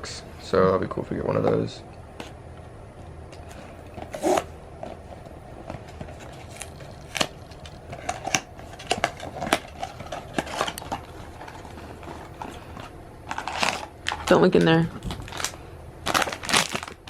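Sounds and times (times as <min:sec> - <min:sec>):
cardboard packaging clicking: 0:05.7 - 0:17.0
plastic wrap crackling: 0:05.8 - 0:17.0.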